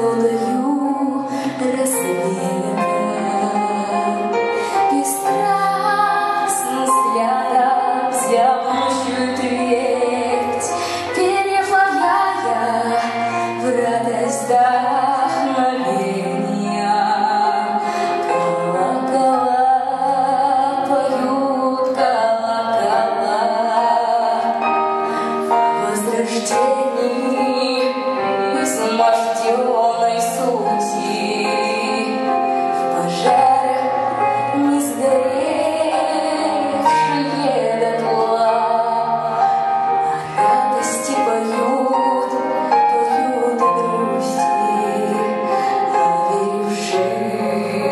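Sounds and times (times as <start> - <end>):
woman singing with vibrato: 0.0 - 47.9.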